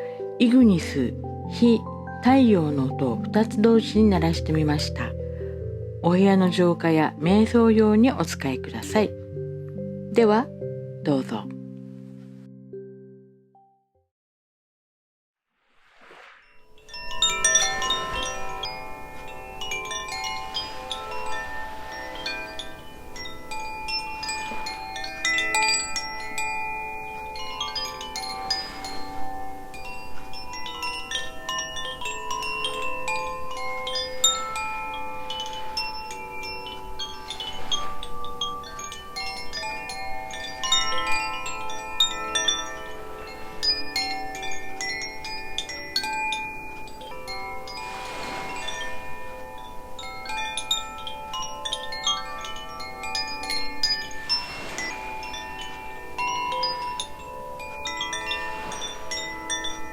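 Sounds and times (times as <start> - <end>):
wind chimes ringing: 16.4 - 59.9.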